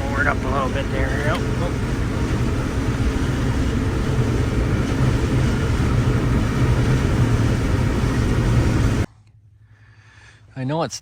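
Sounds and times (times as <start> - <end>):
combine harvester droning: 0.0 - 10.4.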